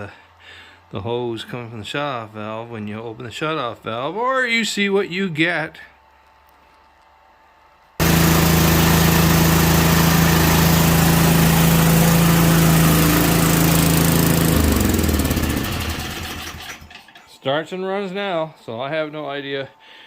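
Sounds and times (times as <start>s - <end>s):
engine winding down: 8.0s - 17.0s
snowblower engine running: 8.0s - 17.0s.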